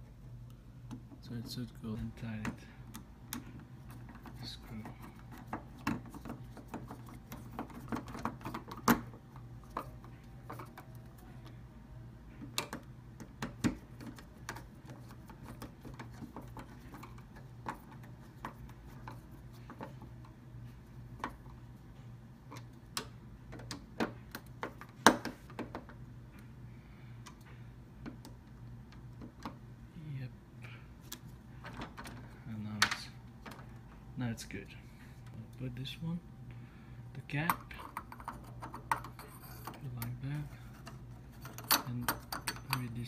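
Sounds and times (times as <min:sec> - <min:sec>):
low steady hum: 0:00.0 - 0:43.0.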